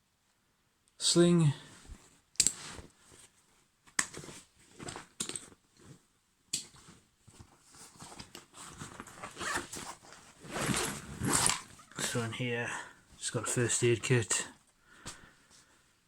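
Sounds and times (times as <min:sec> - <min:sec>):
bag rustling and scraping: 0:06.7 - 0:12.2.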